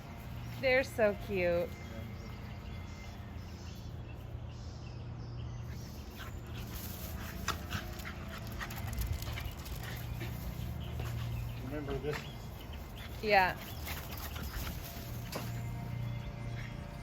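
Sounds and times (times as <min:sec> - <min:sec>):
dogs panting: 0:05.5 - 0:17.0.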